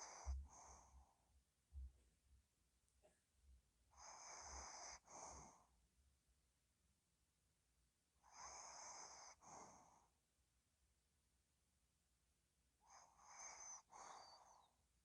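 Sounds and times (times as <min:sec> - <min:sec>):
dog snoring softly: 0:00.0 - 0:01.3, 0:03.9 - 0:05.7, 0:08.2 - 0:10.2, 0:12.8 - 0:14.8
whistling noisy breaths: 0:13.4 - 0:14.7.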